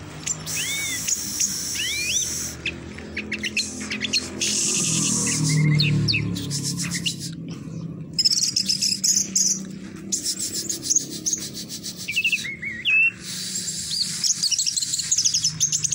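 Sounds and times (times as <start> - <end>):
steady low hum: 0.0 - 12.5
bird trilling and twittering: 0.0 - 15.9
sliding whistled bird notes: 0.3 - 7.4, 8.2 - 15.9.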